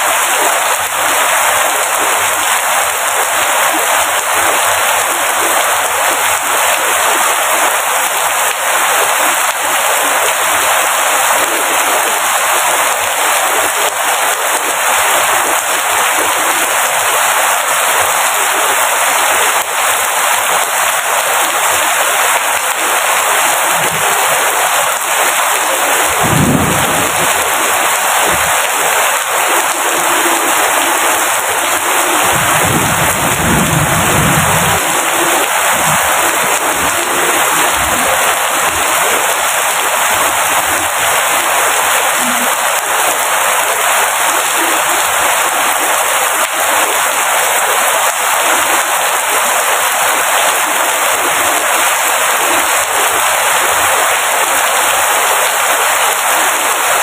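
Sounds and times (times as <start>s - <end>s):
heavy rain downpour: 0.0s - 57.0s
low rumbles: 26.2s - 27.4s.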